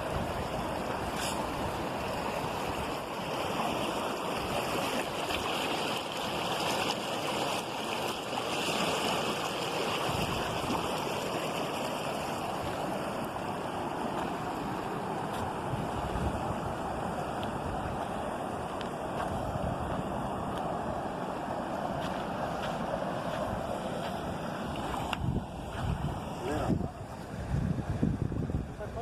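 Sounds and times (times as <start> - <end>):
waterfall water rushing: 0.0 - 27.4.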